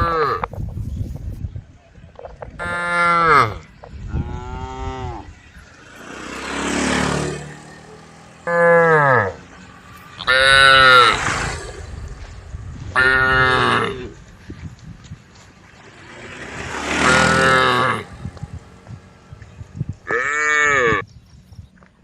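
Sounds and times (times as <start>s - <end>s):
cows mooing: 2.6s - 14.2s, 15.9s - 21.0s
rushing noise: 4.8s - 14.2s, 15.8s - 20.2s.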